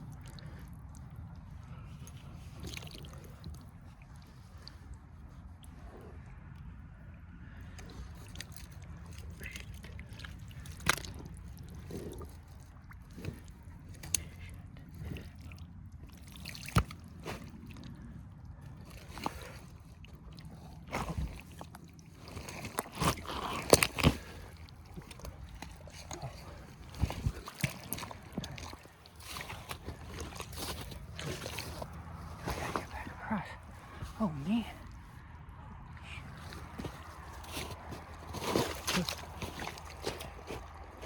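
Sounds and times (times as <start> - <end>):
boots squelching in mud: 1.7 - 3.6, 7.7 - 18.1, 18.7 - 35.0, 36.0 - 41.0.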